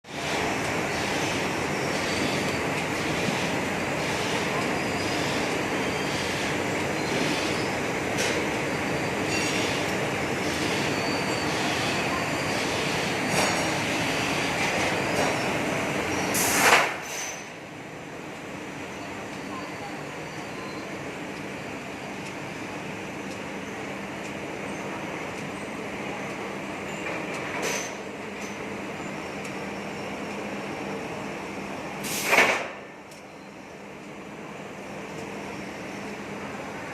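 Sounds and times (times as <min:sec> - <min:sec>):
machine rhythmic clatter: 0:00.1 - 0:17.5
factory machine humming: 0:00.1 - 0:36.9.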